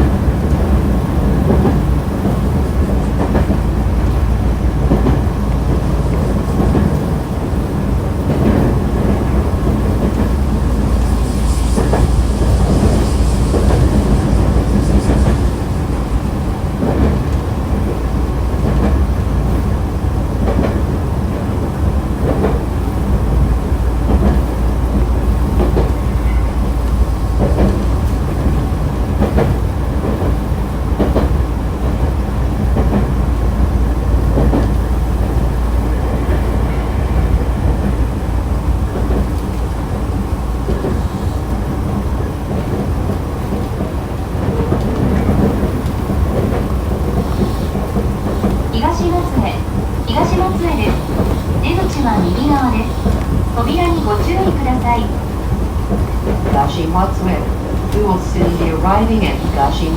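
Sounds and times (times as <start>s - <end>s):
train wheels rumbling: 0.0s - 59.9s
hiss: 9.2s - 17.3s
rail-joint clicks: 22.2s - 38.2s, 38.9s - 59.9s.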